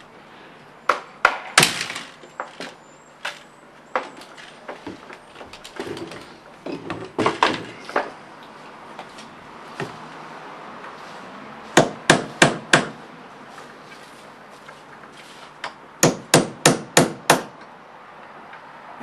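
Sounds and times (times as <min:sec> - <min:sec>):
hammer striking wooden floorboards: 0:11.8 - 0:13.0, 0:16.0 - 0:17.5.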